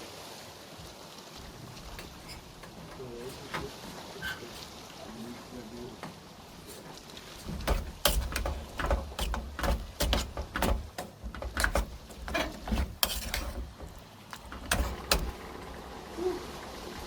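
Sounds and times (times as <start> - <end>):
irregular knocks and clicks: 1.8 - 3.8, 7.4 - 15.4.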